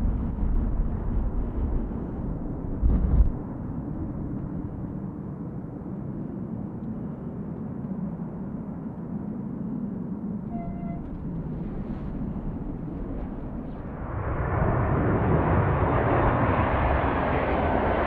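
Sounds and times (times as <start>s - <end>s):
jet engines rumbling: 0.0s - 18.0s
brief high tone: 10.5s - 11.1s.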